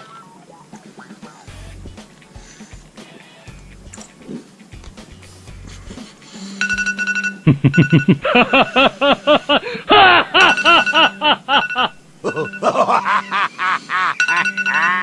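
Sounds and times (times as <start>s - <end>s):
steady held tones: 5.4s - 15.0s.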